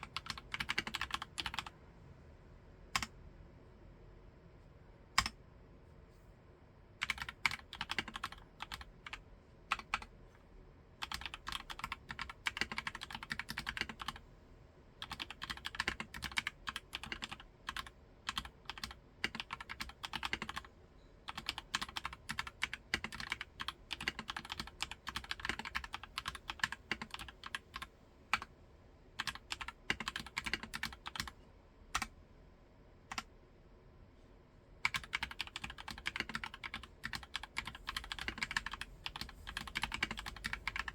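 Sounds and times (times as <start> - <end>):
typing on mechanical keyboard: 0.0 - 1.8, 5.2 - 5.4, 7.0 - 10.1, 11.0 - 14.2, 15.0 - 20.7, 21.3 - 28.5, 29.2 - 31.4, 34.8 - 40.9.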